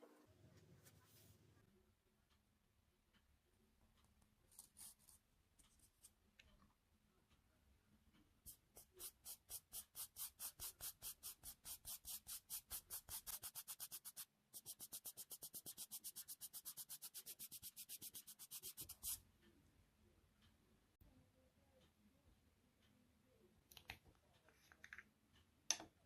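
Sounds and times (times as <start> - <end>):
nail file rubbing on fingernail: 8.5 - 19.2.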